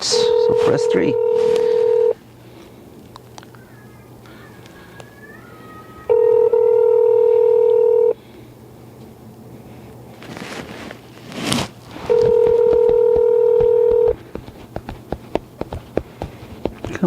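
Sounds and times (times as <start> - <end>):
telephone ringback tone: 0.0 - 2.2, 6.1 - 8.2, 12.1 - 14.2
short rustle: 9.7 - 12.4.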